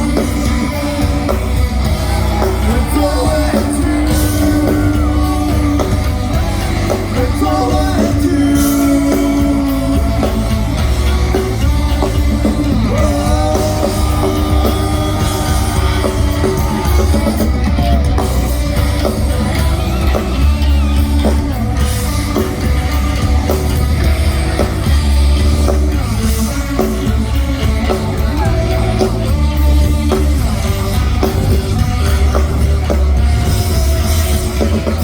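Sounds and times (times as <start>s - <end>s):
live rock band playing: 0.0s - 35.0s
person singing: 0.0s - 35.0s.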